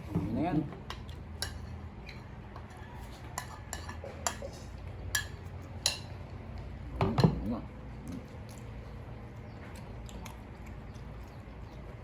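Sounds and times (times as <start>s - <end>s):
tableware clinking: 3.4s - 6.2s.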